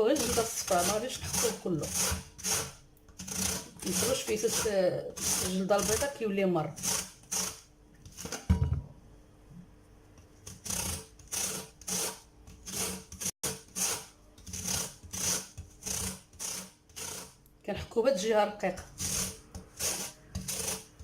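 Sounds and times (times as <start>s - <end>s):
lemon peel rasping on grater: 0.1s - 8.4s, 10.4s - 17.4s, 18.8s - 21.0s.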